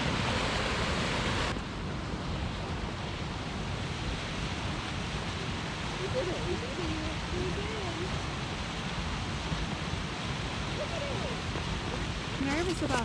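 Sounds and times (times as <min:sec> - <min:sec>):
river water rushing: 0:00.0 - 0:01.6, 0:03.2 - 0:13.0.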